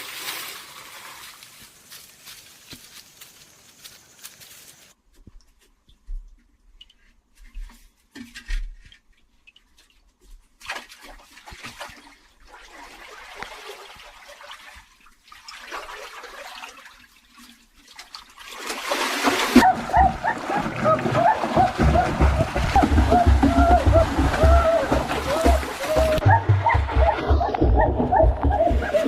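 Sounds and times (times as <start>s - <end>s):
water pouring and splashing: 0.0s - 3.0s, 7.6s - 29.0s.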